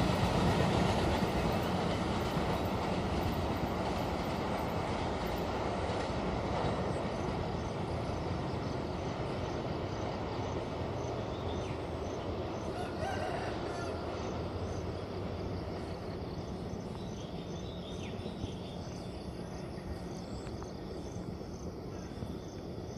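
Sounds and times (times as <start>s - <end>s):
train rumbling on rails: 0.0s - 22.9s
faint rooster crowing: 12.6s - 14.4s.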